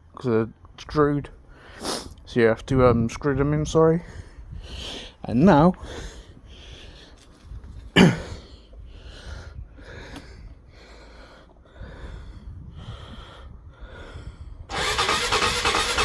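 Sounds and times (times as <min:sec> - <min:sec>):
person breathing heavily: 0:01.4 - 0:02.2, 0:04.0 - 0:14.7.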